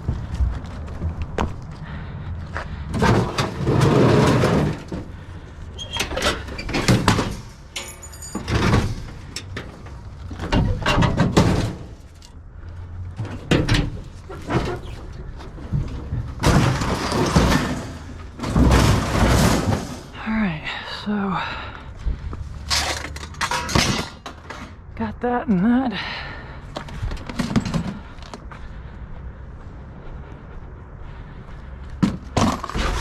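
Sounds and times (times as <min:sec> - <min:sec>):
steady low rumble: 0:00.0 - 0:05.8, 0:20.0 - 0:23.4, 0:24.7 - 0:32.4
metal scrap clanking and scraping: 0:02.9 - 0:05.2, 0:05.8 - 0:12.3, 0:13.2 - 0:20.2, 0:22.6 - 0:24.8, 0:32.4 - 0:33.0.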